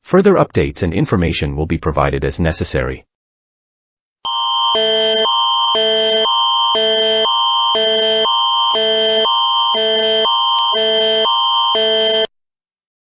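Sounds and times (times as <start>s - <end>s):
alternating electronic alert chord: 4.3s - 12.3s
steady high tone: 4.3s - 12.3s.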